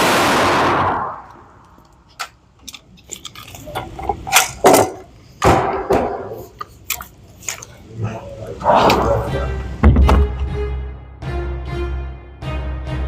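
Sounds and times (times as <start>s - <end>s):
gunshot: 0.0s - 1.2s.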